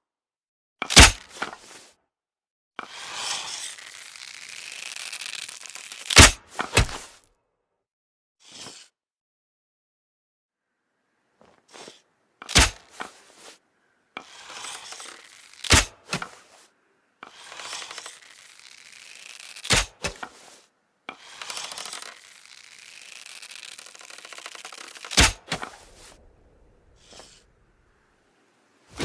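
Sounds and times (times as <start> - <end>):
bow drawing scraping hiss: 2.8 - 7.2, 11.6 - 12.1, 12.8 - 29.0
bow string crack: 2.8 - 7.2, 11.7 - 28.2.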